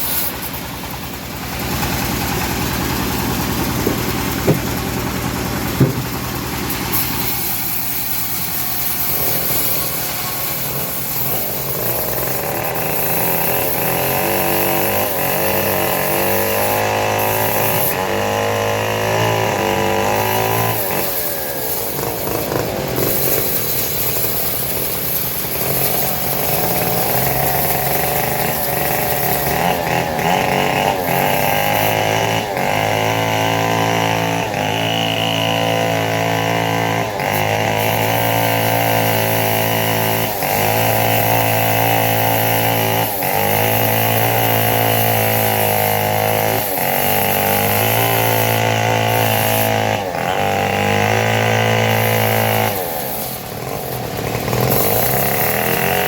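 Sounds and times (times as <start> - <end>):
engine-driven bandsaw cutting wood: 0.0 - 56.0
sharp knocks: 3.7 - 6.5.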